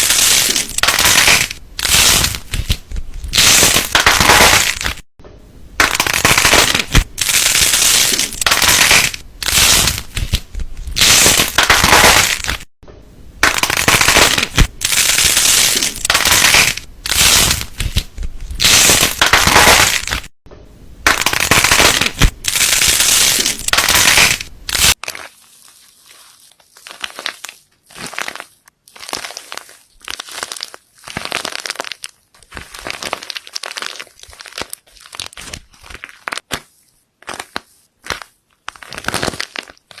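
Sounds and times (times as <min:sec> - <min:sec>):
slime squishing by hand: 0:00.0 - 0:05.0, 0:05.8 - 0:12.7, 0:13.4 - 0:20.3, 0:21.0 - 0:40.0.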